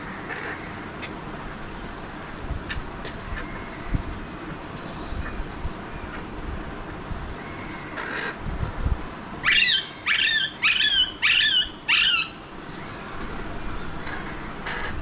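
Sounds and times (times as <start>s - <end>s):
parakeet calling loudly: 0.0s - 3.8s, 7.3s - 8.6s, 9.4s - 12.9s, 13.7s - 15.0s.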